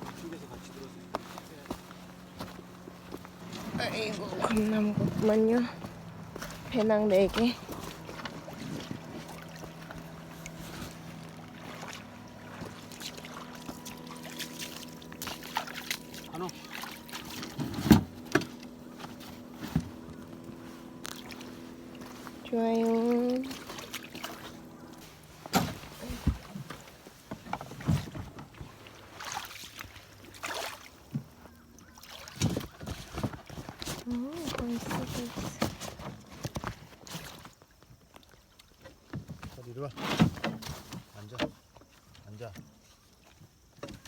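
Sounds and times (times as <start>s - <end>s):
steady low hum: 0.0s - 31.7s
small knocks on a canoe: 1.1s - 29.3s, 30.5s - 44.0s
light water sounds: 2.4s - 39.9s.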